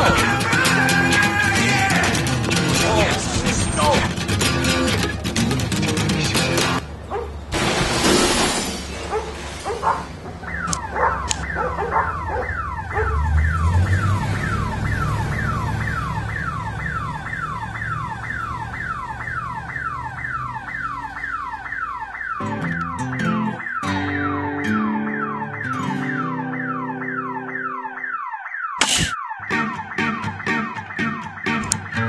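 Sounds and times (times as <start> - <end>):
electronic alarm whooping: 10.4 - 32.0.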